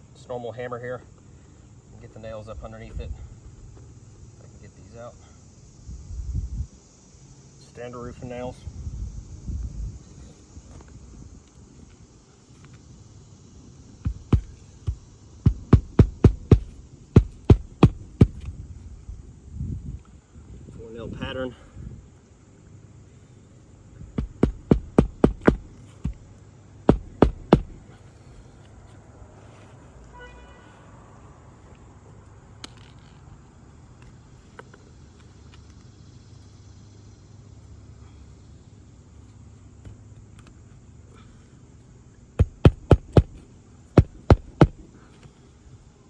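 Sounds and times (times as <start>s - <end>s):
hammer driving nails into shingle: 14.0s - 18.5s, 24.1s - 26.2s, 26.8s - 27.8s, 42.4s - 43.4s, 44.0s - 45.0s.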